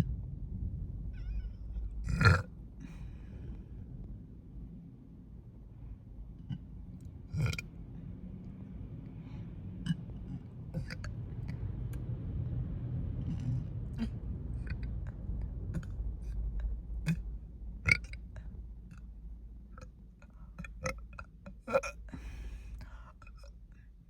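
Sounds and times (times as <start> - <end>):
woman burping: 2.1 - 2.5, 10.8 - 11.1, 20.8 - 22.4
mouth clicks: 9.9 - 11.6.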